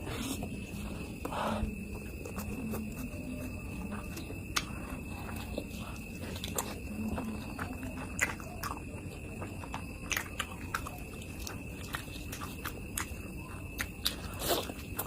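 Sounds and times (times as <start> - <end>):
person chewing and biting: 0.0 - 15.0.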